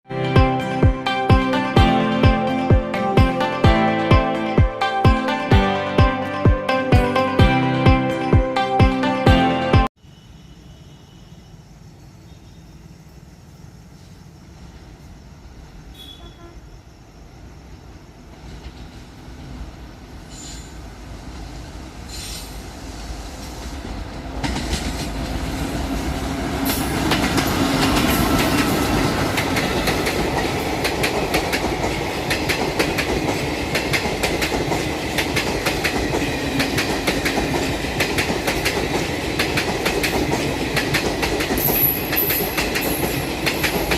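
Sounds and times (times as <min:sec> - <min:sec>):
train rumbling: 0:13.4 - 0:43.9
wheels clacking over rail joints: 0:23.3 - 0:43.9.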